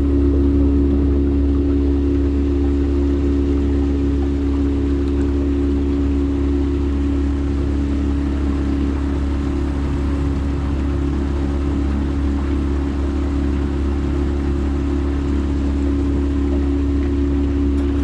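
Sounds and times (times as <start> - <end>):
outboard motor running: 0.0 - 18.0.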